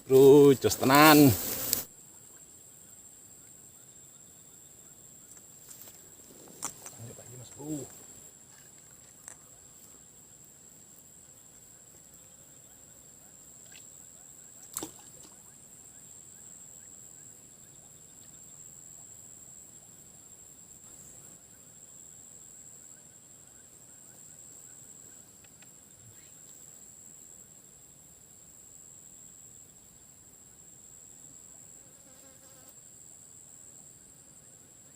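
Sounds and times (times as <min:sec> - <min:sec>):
high-pitched insect drone: 0:00.0 - 0:01.8.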